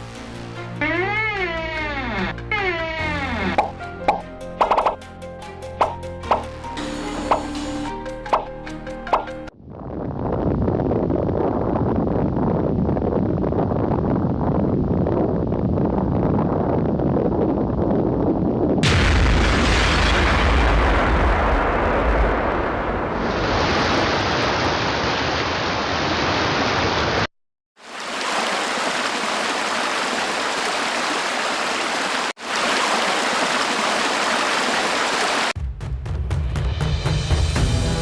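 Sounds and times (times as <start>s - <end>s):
rushing water roar: 23.0s - 35.6s.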